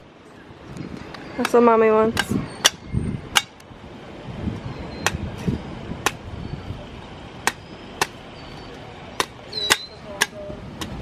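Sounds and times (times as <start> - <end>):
machete chopping coconut: 7.4 - 8.2, 9.2 - 11.0.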